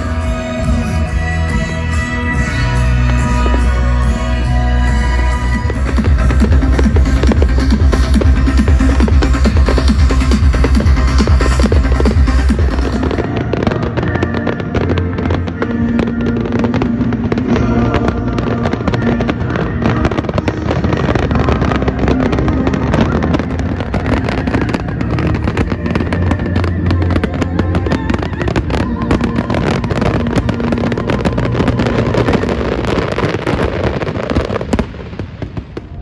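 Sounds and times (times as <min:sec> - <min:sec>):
continuous rumble: 0:00.0 - 0:36.0
fireworks bangs and crackles: 0:00.0 - 0:36.0.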